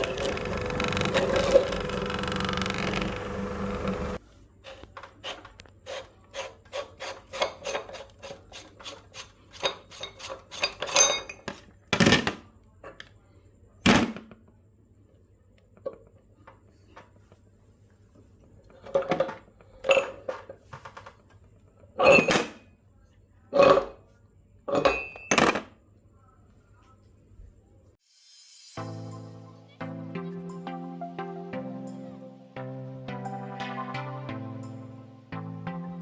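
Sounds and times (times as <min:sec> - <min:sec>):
small clicks and scrapes: 0:04.6 - 0:10.7.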